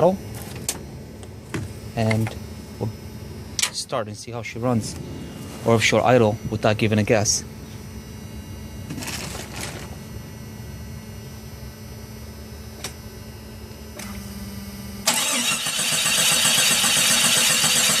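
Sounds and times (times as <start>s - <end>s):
faint hum: 0.0s - 15.6s
car engine cranking and running: 15.0s - 18.0s.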